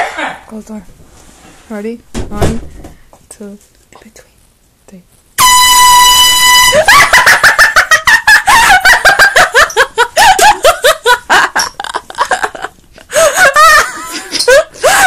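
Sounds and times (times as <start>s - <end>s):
air horn blast: 5.4s - 6.9s
person laughing loudly: 6.6s - 15.0s.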